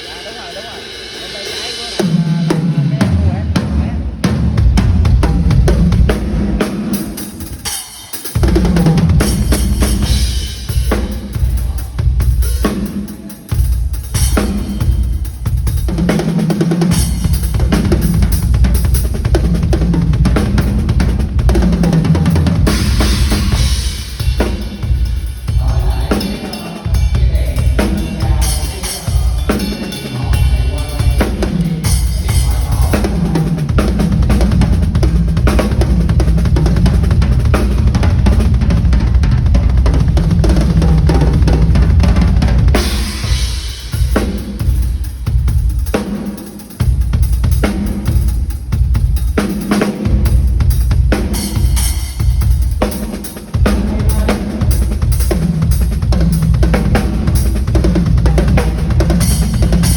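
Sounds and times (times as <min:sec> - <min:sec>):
drum kit playing: 0:00.0 - 0:59.9.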